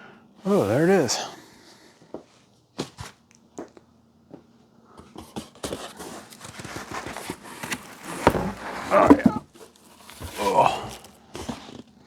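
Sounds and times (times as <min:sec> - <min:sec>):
taps and knocks on packaging: 0:07.2 - 0:09.4.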